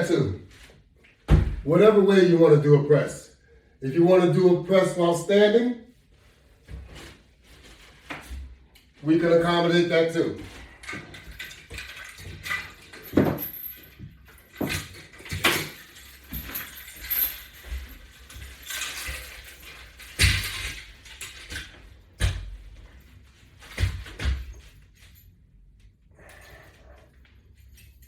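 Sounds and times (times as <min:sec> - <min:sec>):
exercise equipment clinking: 0:10.5 - 0:23.0.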